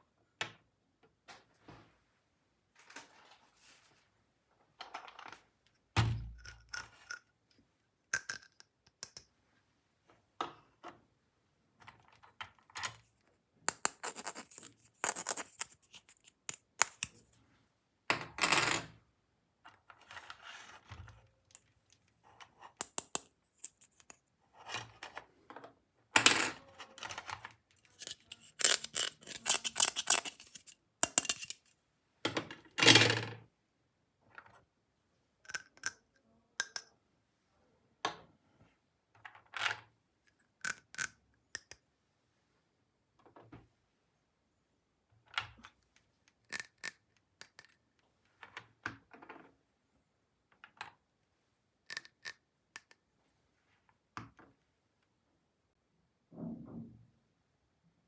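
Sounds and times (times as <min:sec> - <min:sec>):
plastic toy pieces clattering: 0:27.2 - 0:31.7.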